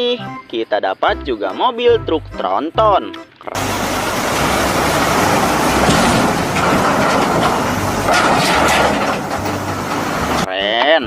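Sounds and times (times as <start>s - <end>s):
loud rushing and rumbling noise: 3.6s - 10.5s.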